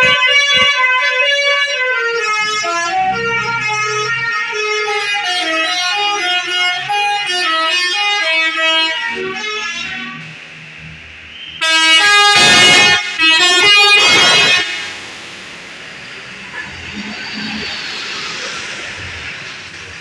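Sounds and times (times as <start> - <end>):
bus melody horn: 0.0 - 10.4, 11.3 - 15.0
harsh air horn blast with hiss: 2.1 - 15.3.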